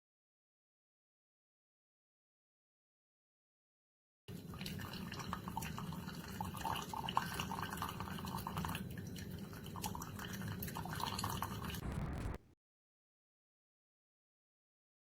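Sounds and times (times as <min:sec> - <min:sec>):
coffee dripping into mug: 0:04.4 - 0:11.8.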